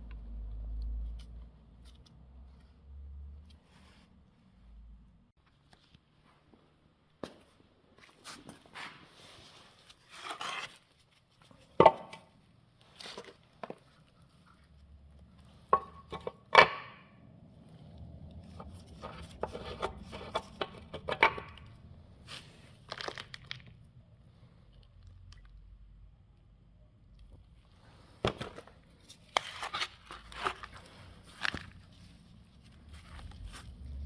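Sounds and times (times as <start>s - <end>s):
rustling and scraping: 7.3s - 11.8s, 12.8s - 16.5s, 17.6s - 25.0s, 27.5s - 34.0s.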